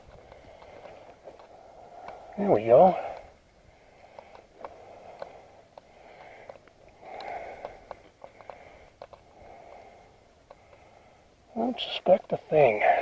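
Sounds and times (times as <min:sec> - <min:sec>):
handling clicks and rustles: 0:00.0 - 0:03.3, 0:04.1 - 0:09.3
faint breathing: 0:00.0 - 0:11.7, 0:12.5 - 0:13.0.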